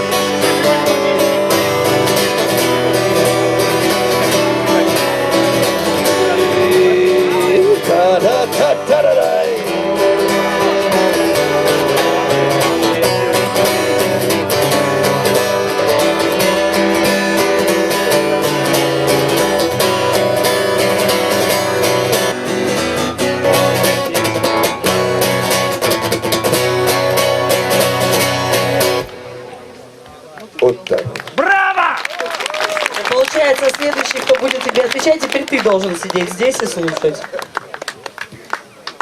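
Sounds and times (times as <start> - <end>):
acoustic guitar strumming chords: 0.0 - 30.0.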